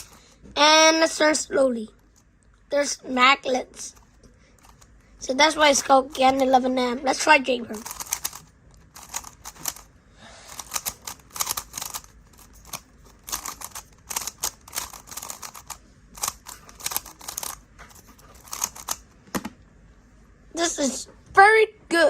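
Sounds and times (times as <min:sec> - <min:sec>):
puzzle cube plastic clicks: 0:07.8 - 0:09.9, 0:10.5 - 0:19.0.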